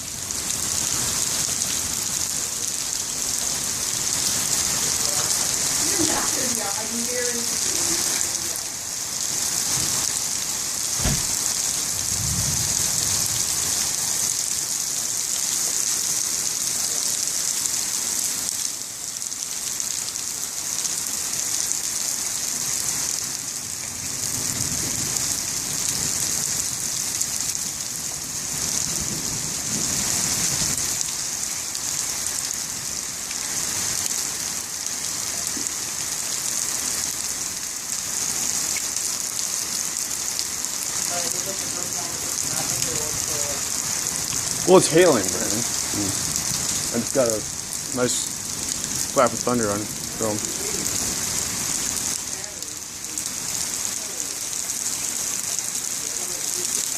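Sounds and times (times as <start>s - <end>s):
heavy rain falling: 0.0s - 56.9s
low thunder rumbles: 10.9s - 13.6s
thunder crack: 11.0s - 12.8s.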